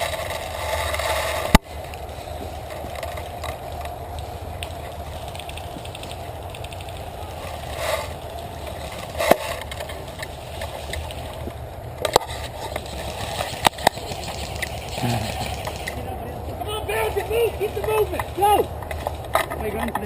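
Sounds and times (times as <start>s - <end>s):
outdoor rustling: 0.0s - 20.0s
wind: 0.0s - 20.0s
sharp cracks: 2.7s - 16.0s.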